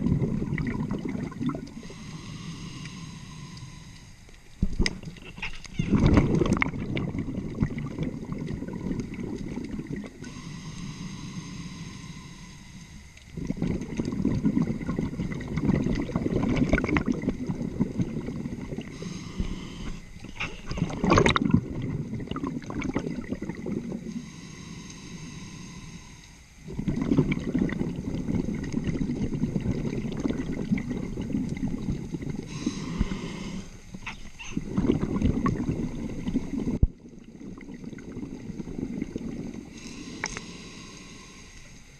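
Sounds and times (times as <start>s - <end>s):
gurgling exhaled bubbles: 0.0s - 3.9s, 4.6s - 11.9s, 13.2s - 25.4s, 26.6s - 41.4s
hissing regulator inhalations: 1.6s - 4.4s, 10.2s - 13.8s, 18.7s - 20.7s, 23.8s - 26.8s, 32.1s - 34.9s, 39.0s - 41.9s.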